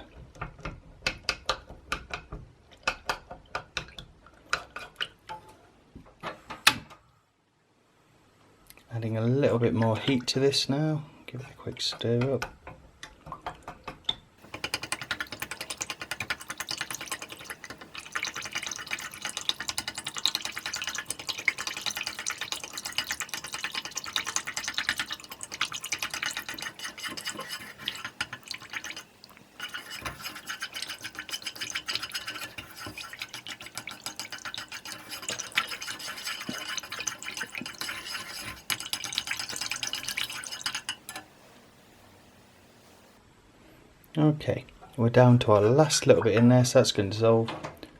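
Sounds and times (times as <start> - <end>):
utensil scraping a container: 14.4 - 41.3.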